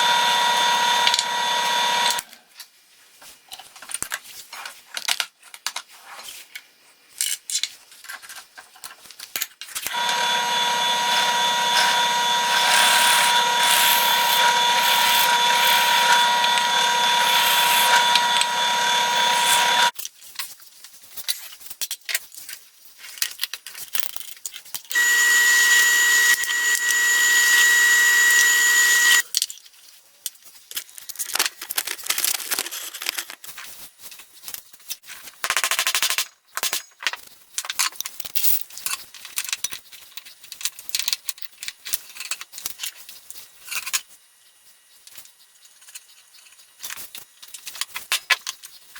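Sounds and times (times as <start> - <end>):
woodworking power tool running: 0.0 - 2.2, 9.9 - 19.9, 24.9 - 29.2.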